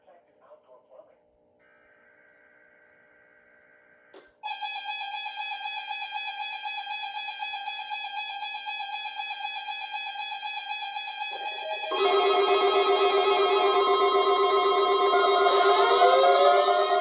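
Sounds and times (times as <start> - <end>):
steady electronic alert tone: 11.4 - 17.0.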